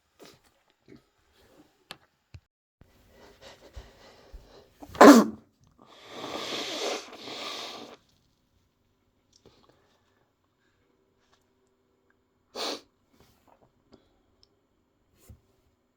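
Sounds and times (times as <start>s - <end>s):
breathing: 3.1s - 4.8s, 5.8s - 8.0s
person sneezing: 4.8s - 5.4s.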